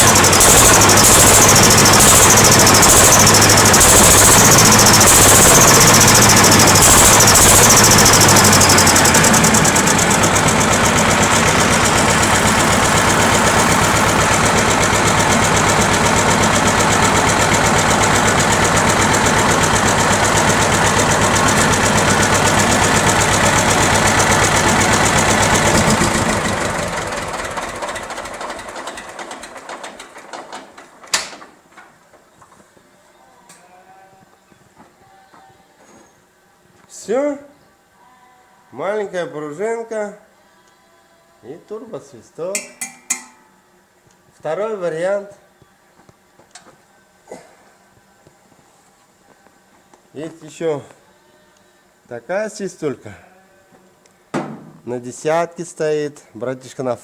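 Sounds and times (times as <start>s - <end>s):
engine running down: 0.0s - 32.4s
tractor diesel engine running: 0.0s - 32.4s, 42.6s - 43.6s, 54.4s - 55.0s
sharp click: 42.6s - 43.5s.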